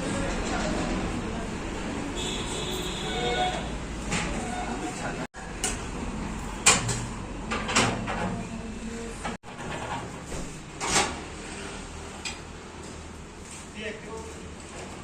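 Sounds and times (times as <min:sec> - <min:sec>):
steady background noise: 0:00.0 - 0:15.0
sharp knocks and clanks: 0:06.6 - 0:08.4, 0:09.3 - 0:11.3.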